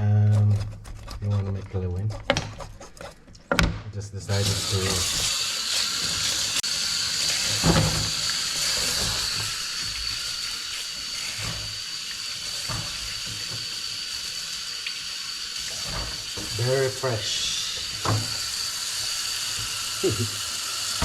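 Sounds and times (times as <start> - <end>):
tap water running into sink: 4.3 - 21.0.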